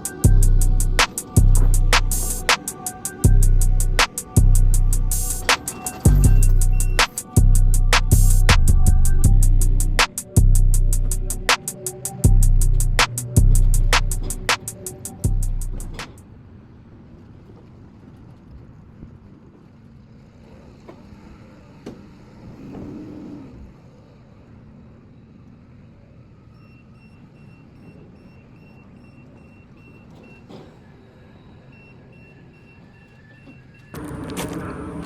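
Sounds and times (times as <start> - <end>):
high electronic beeps: 0.0 - 8.5, 26.5 - 30.4
vehicle engine rumbling: 0.0 - 35.0.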